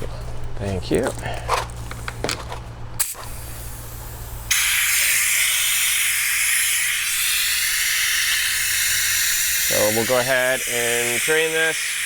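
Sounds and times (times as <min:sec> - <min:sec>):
siphon pump air hiss: 0:03.0 - 0:12.0.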